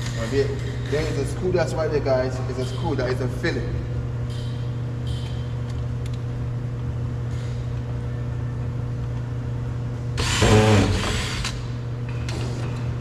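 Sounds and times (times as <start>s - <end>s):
steady low hum: 0.0s - 13.0s
power drill whine: 10.2s - 11.6s.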